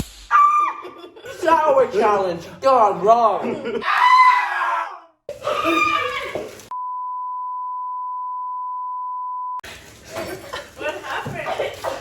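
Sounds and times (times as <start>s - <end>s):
censor bleep: 6.7s - 9.6s.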